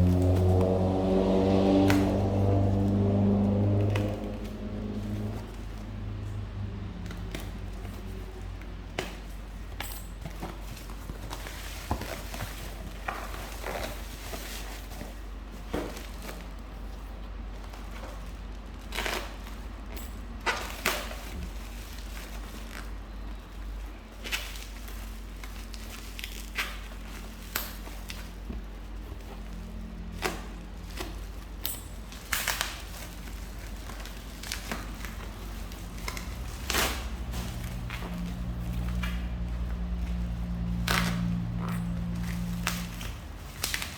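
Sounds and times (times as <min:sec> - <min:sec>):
packaging crinkling: 0:10.3 - 0:43.9.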